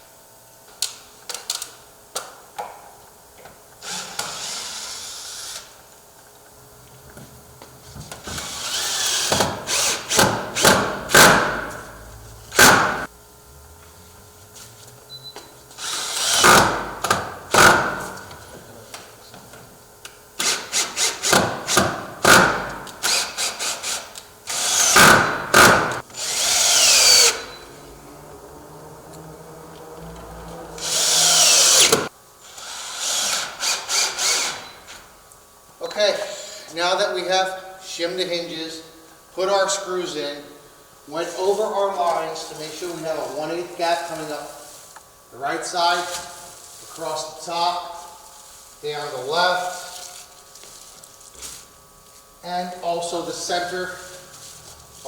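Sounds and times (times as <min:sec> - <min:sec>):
power drill driving screws: 0:03.8 - 0:05.8, 0:08.2 - 0:11.8, 0:12.5 - 0:13.1, 0:15.8 - 0:18.2, 0:20.4 - 0:27.6, 0:30.8 - 0:35.0.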